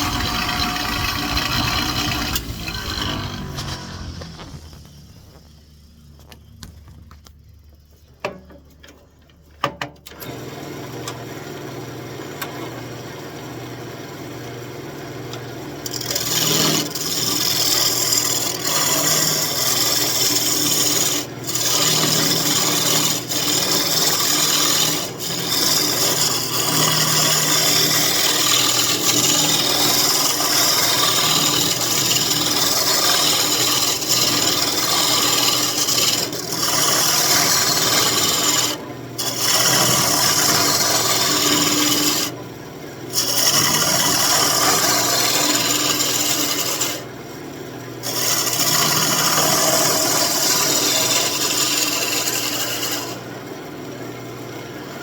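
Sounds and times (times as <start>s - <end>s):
wood lathe motor running: 0.0s - 5.4s, 15.3s - 42.5s, 43.1s - 47.1s, 48.0s - 54.4s
lathe tool scraping wood: 0.0s - 5.6s, 15.8s - 42.4s, 43.1s - 47.1s, 48.0s - 53.4s.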